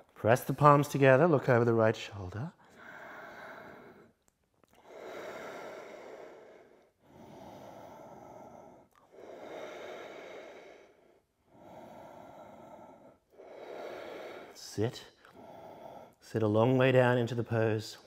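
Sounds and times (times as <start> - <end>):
person breathing slowly: 2.6 - 16.3.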